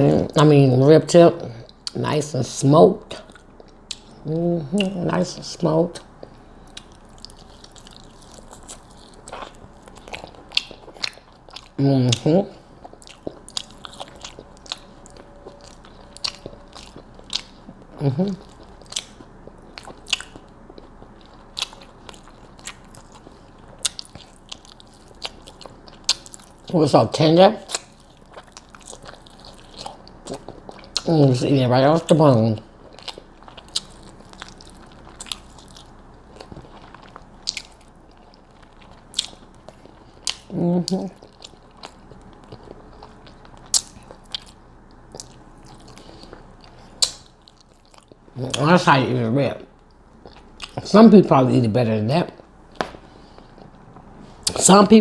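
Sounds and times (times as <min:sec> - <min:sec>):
person chewing: 0:03.0 - 0:48.8, 0:49.7 - 0:50.9, 0:52.3 - 0:54.7
wet lip smacks and clicks: 0:47.0 - 0:47.3.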